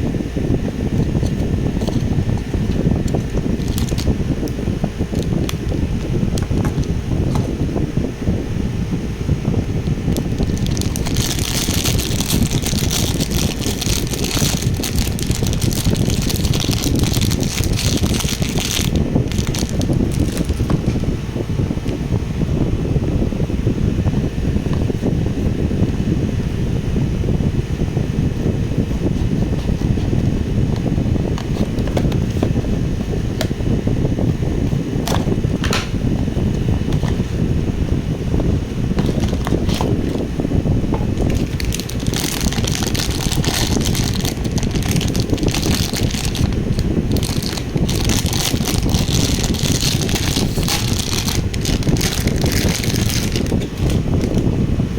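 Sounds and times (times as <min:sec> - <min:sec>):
steady low rumble: 0:00.0 - 0:54.9
plastic packaging crinkling: 0:01.0 - 0:04.2, 0:05.1 - 0:05.7, 0:10.1 - 0:20.9, 0:39.0 - 0:40.3, 0:40.9 - 0:54.4.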